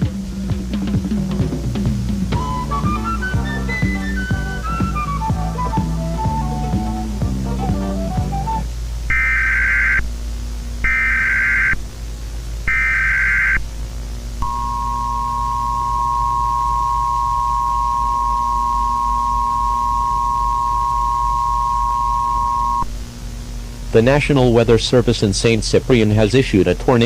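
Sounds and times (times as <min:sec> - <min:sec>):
steady two-tone alert signal: 0:09.1 - 0:10.0, 0:10.8 - 0:11.8, 0:12.7 - 0:13.6, 0:14.4 - 0:22.9
warbling digital data tones: 0:09.1 - 0:10.1, 0:10.8 - 0:11.8, 0:12.7 - 0:13.6, 0:14.4 - 0:22.9.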